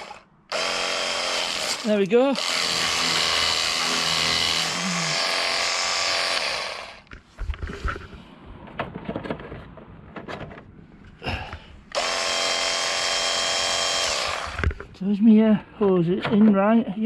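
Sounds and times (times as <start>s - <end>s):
pressure washer running: 0.0s - 7.0s
knocks and clatter: 7.1s - 10.8s.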